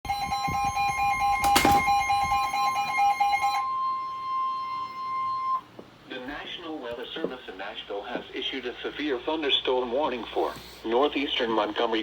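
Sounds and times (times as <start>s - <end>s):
steady high alarm tone: 0.1s - 5.7s.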